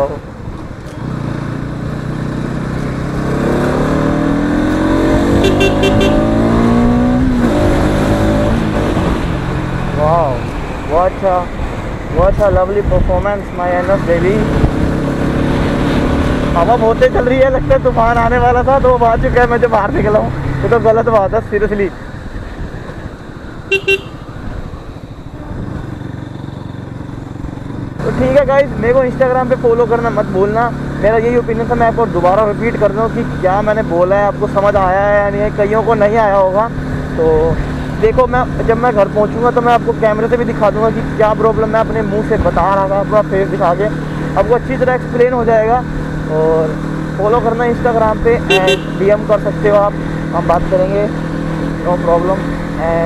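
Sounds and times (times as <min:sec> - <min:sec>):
motorcycle engine accelerating: 0:00.8 - 0:11.0, 0:13.2 - 0:21.3, 0:22.9 - 0:53.0
vehicle horn toots: 0:05.3 - 0:06.4, 0:23.7 - 0:24.3, 0:48.5 - 0:49.2.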